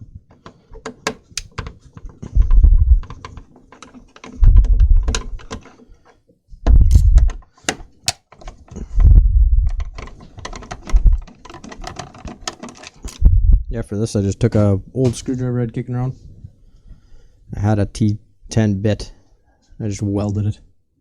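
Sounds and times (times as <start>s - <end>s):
radio thumping on bench: 1.1s - 1.5s
screwdriver bit clicking in screws: 6.9s - 7.1s.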